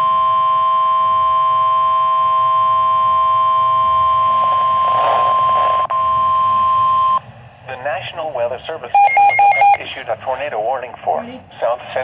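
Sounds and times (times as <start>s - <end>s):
steady electronic alert tone: 9.0s - 9.8s.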